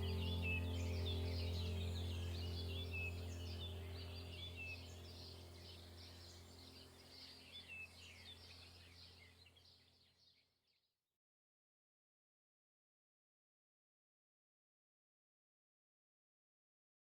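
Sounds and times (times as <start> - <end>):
low steady tone: 0.0 - 8.6
low steady hum: 0.0 - 9.5
songbirds chirping and warbling: 0.0 - 10.5.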